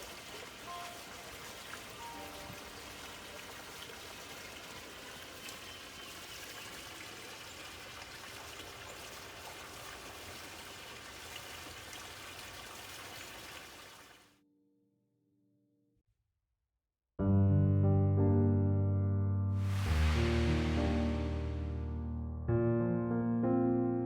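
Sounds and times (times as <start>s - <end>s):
rushing water: 0.0s - 14.3s, 19.6s - 21.8s.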